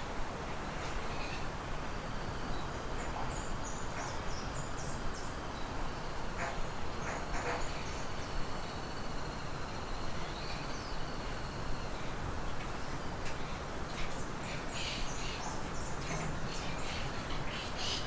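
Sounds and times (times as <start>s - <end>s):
steady background hiss: 0.0s - 18.0s
small birds chirping: 9.6s - 18.0s.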